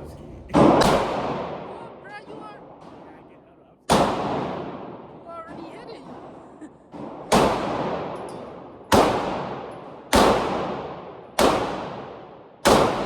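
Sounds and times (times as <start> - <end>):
echoing gunshots: 0.5 - 13.0.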